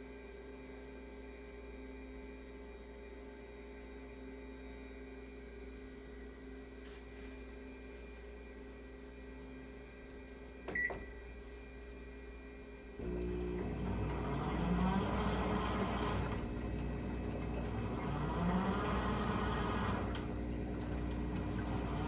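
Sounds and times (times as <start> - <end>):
low motor whine: 7.3 - 22.0
washing machine motor hum: 10.7 - 22.0
water washing: 13.0 - 22.0.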